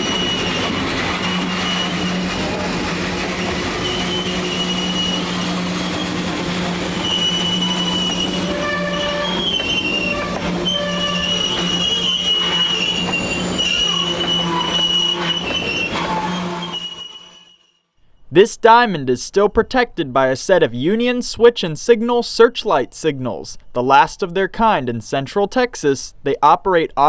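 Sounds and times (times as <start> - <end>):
freight train low hum: 0.0 - 17.1
train wheels squealing: 0.0 - 17.8.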